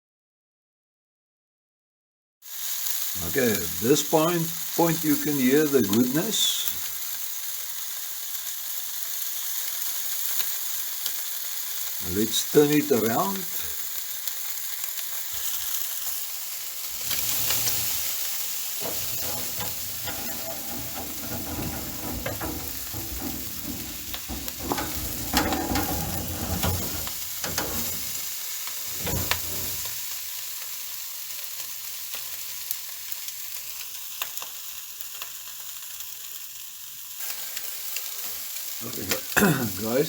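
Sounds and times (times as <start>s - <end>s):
meat sizzling on a grill: 2.4s - 40.0s
meat being turned on grill: 12.0s - 13.8s, 16.8s - 30.1s.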